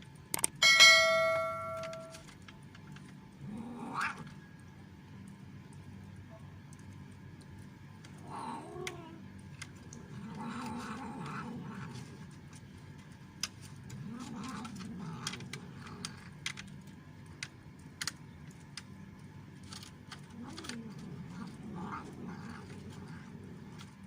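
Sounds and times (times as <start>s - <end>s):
cat crunching dry food: 1.9s - 24.0s
cat growling low: 3.4s - 4.4s, 8.1s - 12.6s, 13.8s - 16.6s, 20.1s - 24.0s.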